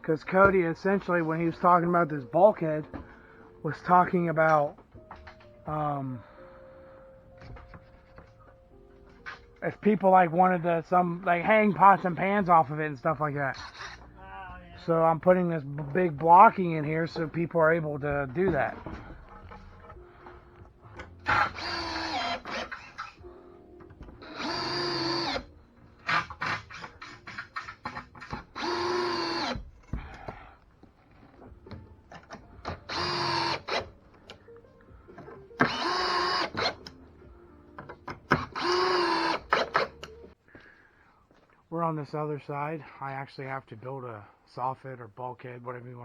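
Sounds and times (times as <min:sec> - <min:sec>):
power drill driving screws: 0:21.0 - 0:23.3, 0:24.2 - 0:29.7, 0:32.2 - 0:34.0, 0:35.6 - 0:37.0, 0:38.1 - 0:40.2.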